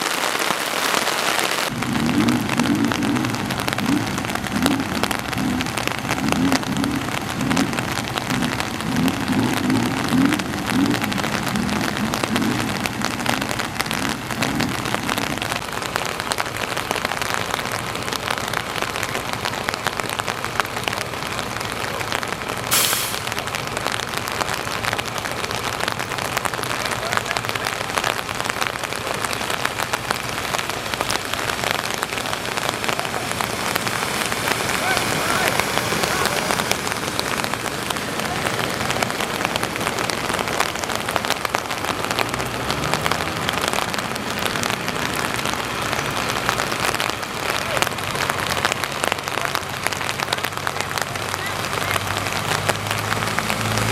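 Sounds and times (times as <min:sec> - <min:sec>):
heavy rain falling: 0:00.0 - 0:53.9
brief hiss: 0:22.7 - 0:23.3.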